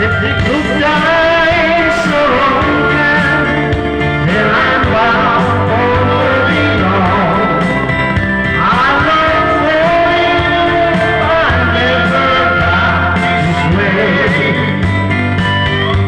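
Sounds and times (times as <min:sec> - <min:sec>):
guitar accompaniment: 0:00.0 - 0:16.0
man singing: 0:00.0 - 0:16.0.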